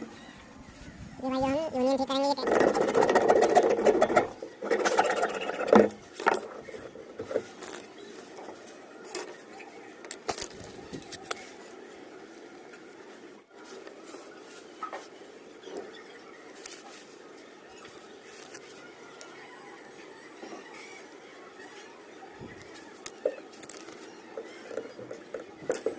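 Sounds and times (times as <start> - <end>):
plastic fittings scraping and clicking: 2.4 - 9.4, 22.5 - 25.9.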